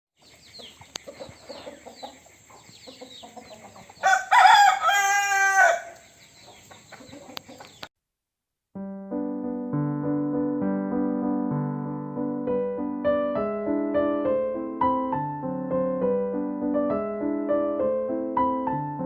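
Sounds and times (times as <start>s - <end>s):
chickens clucking: 0.2s - 7.9s
rooster crowing: 4.0s - 6.1s.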